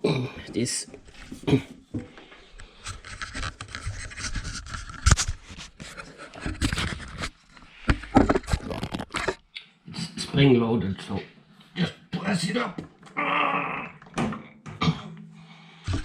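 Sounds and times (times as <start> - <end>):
parts scraping and rubbing: 1.0 - 9.5.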